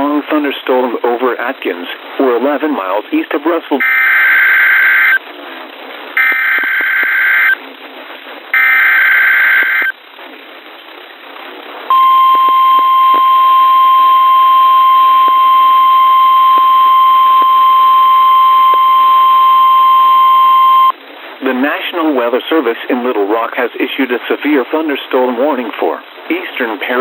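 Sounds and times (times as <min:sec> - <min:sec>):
radio hiss: 0:00.0 - 0:10.0, 0:11.8 - 0:27.0
steady warning alarm tone: 0:03.8 - 0:05.2, 0:06.2 - 0:07.6, 0:08.6 - 0:09.9, 0:11.9 - 0:20.9.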